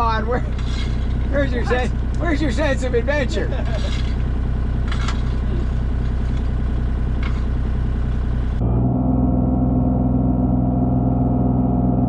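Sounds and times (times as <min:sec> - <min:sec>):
skid steer engine running: 0:00.0 - 0:12.0.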